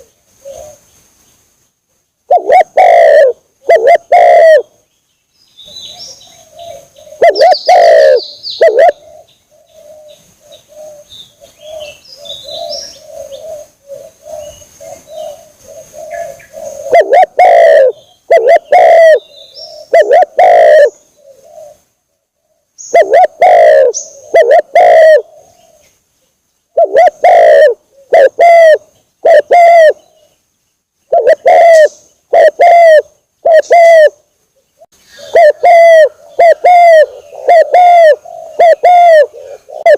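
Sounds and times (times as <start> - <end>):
dove cooing: 0.0 - 0.8, 2.3 - 4.8, 5.7 - 25.9, 26.7 - 30.4, 31.1 - 39.9
softer rolling coo: 35.2 - 39.9.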